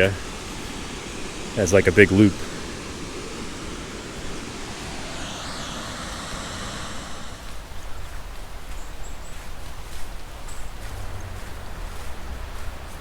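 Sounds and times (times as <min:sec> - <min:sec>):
waterfall rushing: 0:00.0 - 0:07.6
footsteps on a trail: 0:07.5 - 0:13.0.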